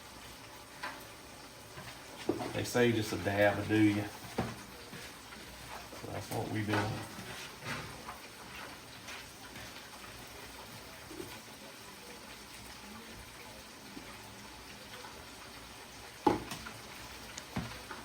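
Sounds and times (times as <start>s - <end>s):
fish sizzling in hot grease: 0.0s - 18.0s.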